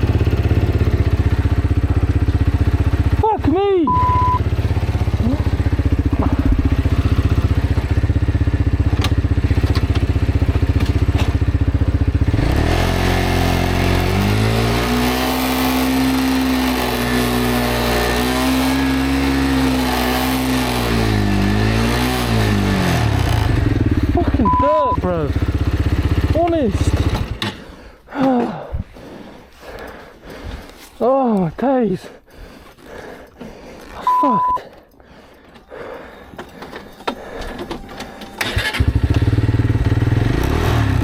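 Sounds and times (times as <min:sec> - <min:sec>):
motorcycle engine revving: 0:00.0 - 0:27.6, 0:38.4 - 0:41.0.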